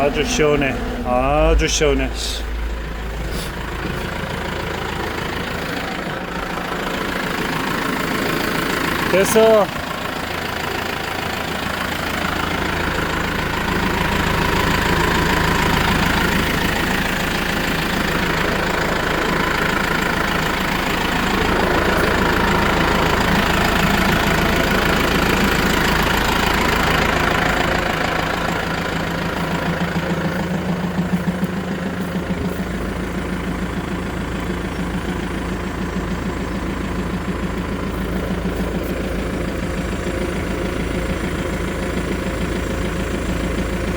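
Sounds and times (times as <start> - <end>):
tractor engine running: 0.0 - 43.9.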